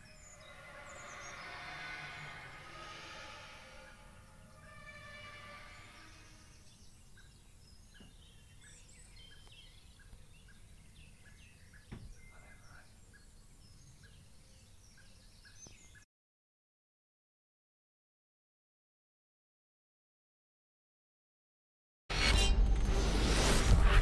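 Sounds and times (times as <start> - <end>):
low outdoor rumble: 0.0 - 6.6
birds chirping: 0.0 - 16.1.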